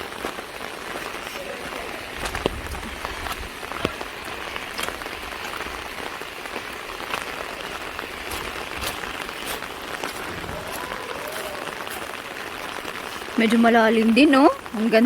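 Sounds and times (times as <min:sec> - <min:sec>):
falling rain: 0:00.0 - 0:15.0
stream rushing: 0:00.0 - 0:15.0
wind rumble on microphone: 0:02.2 - 0:04.0, 0:10.0 - 0:11.2.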